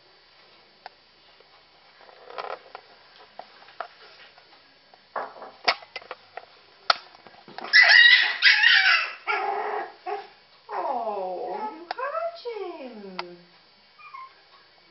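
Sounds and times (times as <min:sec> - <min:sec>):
puppy yelping and squealing: 0:07.6 - 0:10.3, 0:14.0 - 0:14.4.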